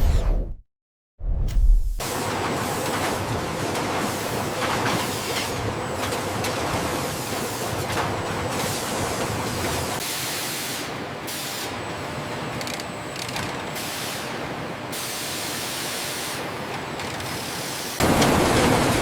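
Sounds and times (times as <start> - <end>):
factory machinery clatter and hiss: 2.0 - 19.0.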